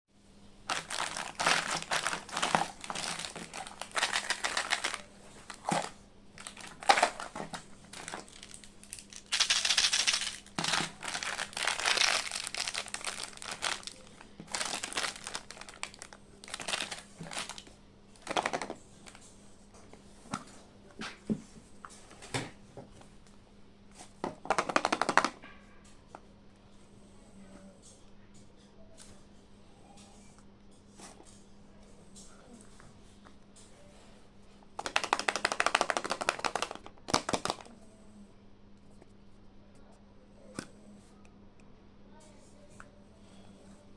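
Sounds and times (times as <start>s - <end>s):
packaging crinkling and tearing: 0.7s - 19.2s, 34.8s - 37.7s.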